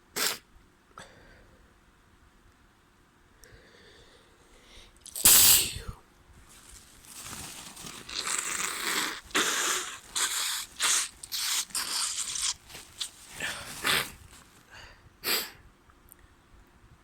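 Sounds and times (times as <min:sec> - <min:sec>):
person blowing nose: 0:00.1 - 0:00.4, 0:05.1 - 0:05.9, 0:07.9 - 0:14.4, 0:15.2 - 0:15.6
person sneezing: 0:00.1 - 0:00.4, 0:05.1 - 0:06.0, 0:08.1 - 0:12.6, 0:13.3 - 0:14.3, 0:15.2 - 0:15.6.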